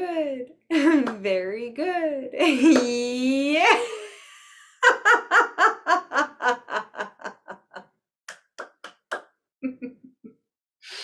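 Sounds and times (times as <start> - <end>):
person laughing out loud: 9.6 - 10.2
soft chuckles: 9.6 - 10.3.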